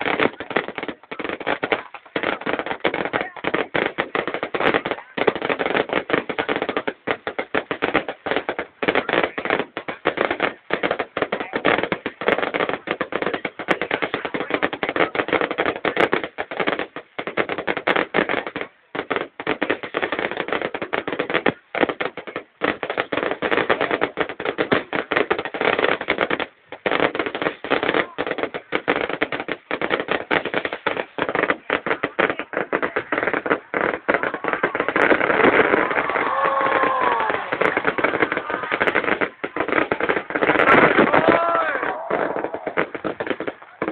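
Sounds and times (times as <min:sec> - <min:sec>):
fireworks crackling and popping: 0:00.0 - 0:43.9.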